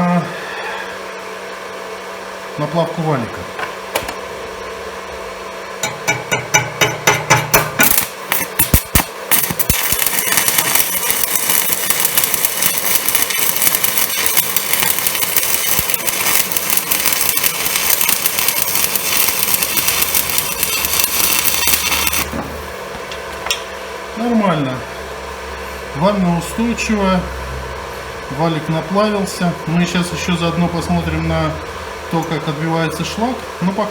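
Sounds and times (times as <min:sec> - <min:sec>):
welding arc crackling: 0:05.8 - 0:22.8
arc striking cracks: 0:07.6 - 0:22.3.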